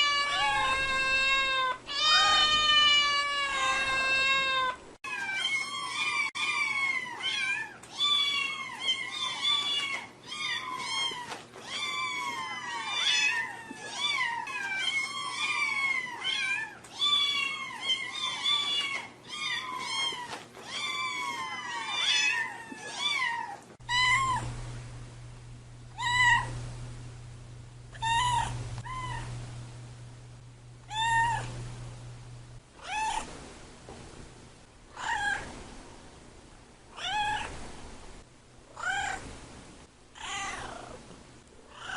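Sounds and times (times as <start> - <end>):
cats meowing: 0.0 - 24.5, 25.9 - 26.6, 27.9 - 29.3, 30.9 - 31.6, 35.0 - 35.5, 37.0 - 37.5, 38.8 - 39.2, 40.2 - 41.0
low hum: 23.8 - 40.2.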